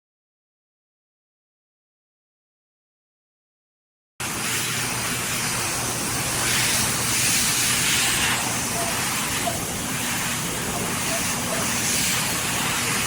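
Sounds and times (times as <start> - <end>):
pet hair dryer blowing air: 4.4 - 13.0.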